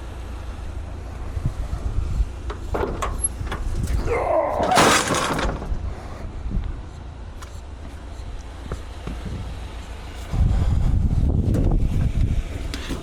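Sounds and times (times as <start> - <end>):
knocks and metal rattles: 2.3 - 6.0.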